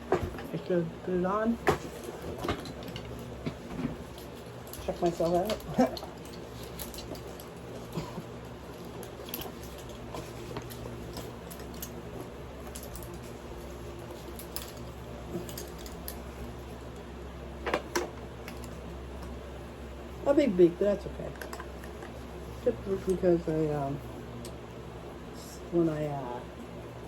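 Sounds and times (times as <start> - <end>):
steady low hum: 0.0 - 27.0
webbing clinks and rustles: 1.4 - 17.1, 18.0 - 19.4.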